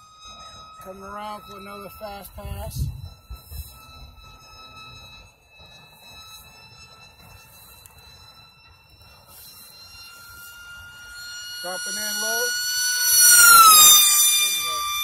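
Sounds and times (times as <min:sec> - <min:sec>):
electric propeller whine: 0:00.0 - 0:15.0
wind rumble on microphone: 0:01.4 - 0:04.4.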